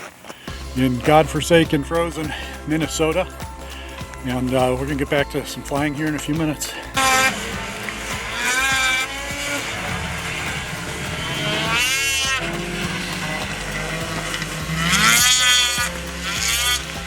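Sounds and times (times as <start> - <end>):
motor engine running: 0.5 - 17.0.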